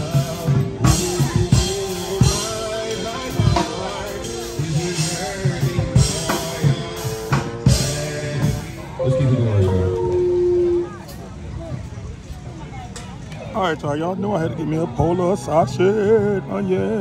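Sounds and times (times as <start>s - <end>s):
drum-kit beat and bass: 0.0s - 9.1s
person singing: 0.0s - 10.8s.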